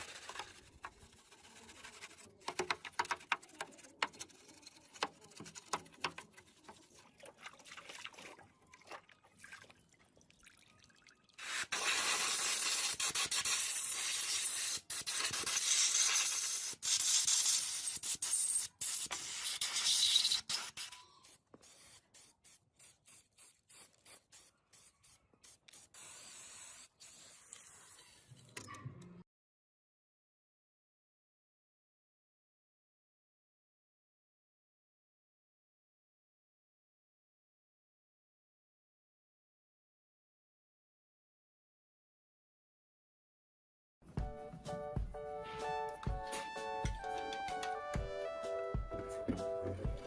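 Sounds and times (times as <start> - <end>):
spray hissing: 11.4 - 28.3.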